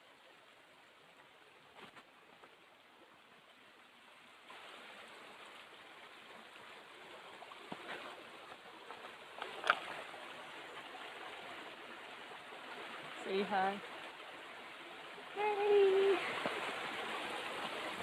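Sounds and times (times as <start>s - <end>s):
flowing stream water: 0.0s - 18.0s.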